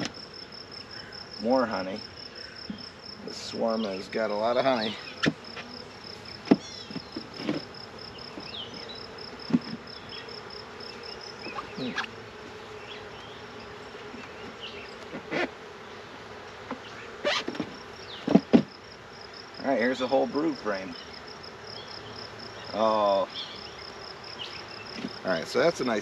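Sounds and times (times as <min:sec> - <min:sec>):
knocks of wooden hive frames: 0:00.0 - 0:00.3, 0:03.7 - 0:21.6, 0:24.8 - 0:26.0
bees buzzing: 0:00.0 - 0:26.0
bees flying close past: 0:00.0 - 0:26.0.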